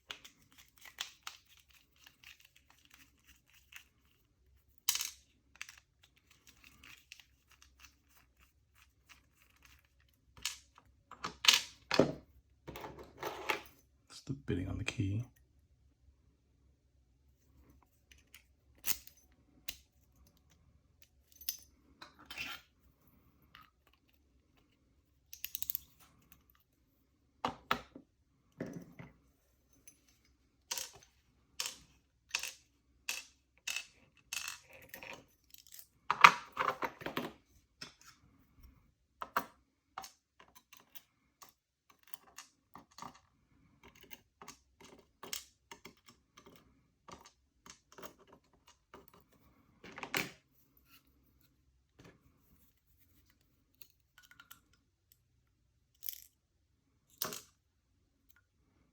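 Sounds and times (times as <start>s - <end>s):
small metal lock parts clattering: 0.0s - 14.0s, 18.0s - 22.8s, 25.2s - 26.6s, 28.6s - 37.4s, 39.2s - 51.0s, 53.7s - 55.3s, 55.9s - 56.4s, 57.1s - 57.6s.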